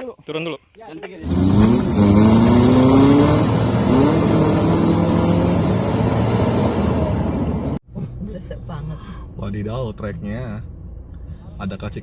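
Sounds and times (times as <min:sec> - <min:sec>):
vehicle engine revving: 0:01.2 - 0:07.8.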